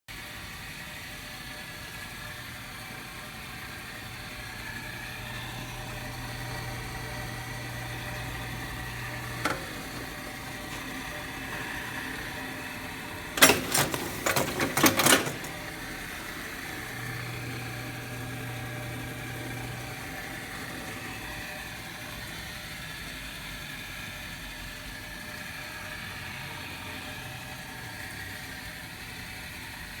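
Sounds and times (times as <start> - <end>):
machine motor hum: 1.0 - 29.9
loud mechanical clattering: 7.9 - 16.2.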